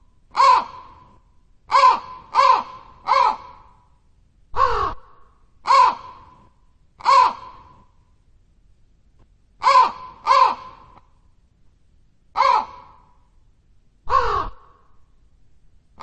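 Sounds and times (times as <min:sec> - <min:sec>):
crow cawing: 0:00.4 - 0:01.1, 0:01.7 - 0:03.8, 0:04.6 - 0:06.4, 0:07.0 - 0:07.8, 0:09.6 - 0:11.0, 0:12.4 - 0:13.2, 0:14.1 - 0:14.9.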